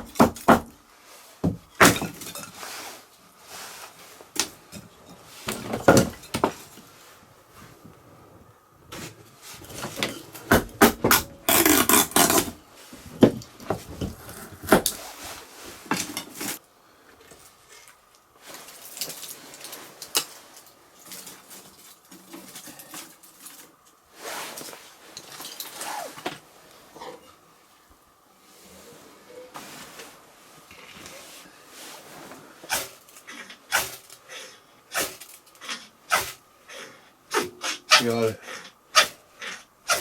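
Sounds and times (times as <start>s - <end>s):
quiet rustling: 0.9s - 10.5s, 12.7s - 34.3s.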